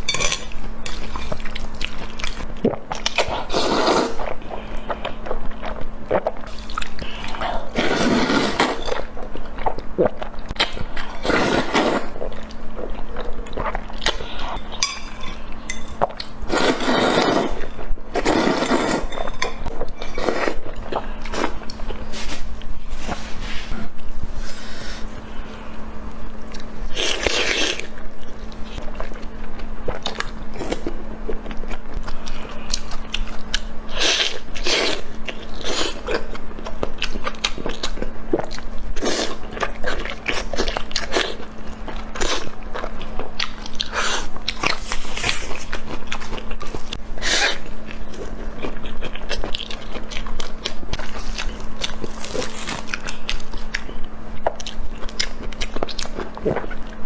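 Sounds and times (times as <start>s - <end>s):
crunchy chewing: 26.4s - 57.0s.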